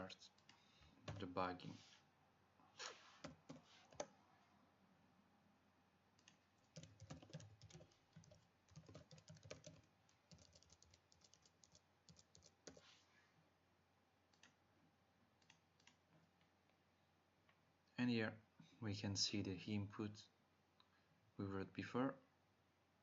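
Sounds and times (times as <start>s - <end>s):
keyboard typing: 0.3s - 1.3s, 3.2s - 4.1s, 6.2s - 12.8s, 15.4s - 16.0s.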